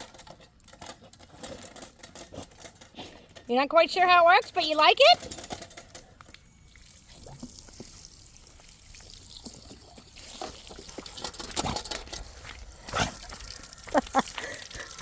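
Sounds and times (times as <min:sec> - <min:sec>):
water trickling from fountain: 0:06.3 - 0:15.0.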